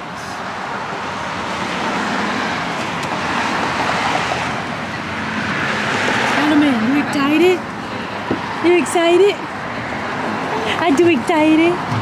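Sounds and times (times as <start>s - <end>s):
road traffic passing: 0.0s - 12.0s.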